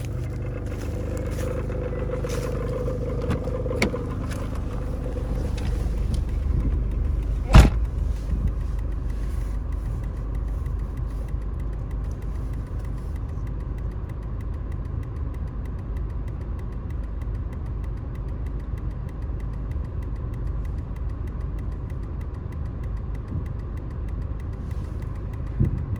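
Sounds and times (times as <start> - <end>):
car engine idling: 0.0 - 13.5.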